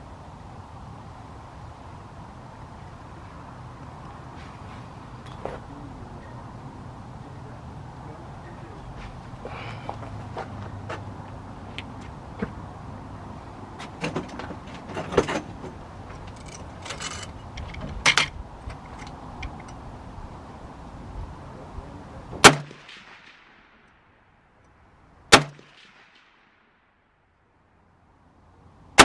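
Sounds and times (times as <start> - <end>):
steady background noise: 0.0 - 29.0
rifle shots: 22.4 - 23.8, 25.3 - 26.6.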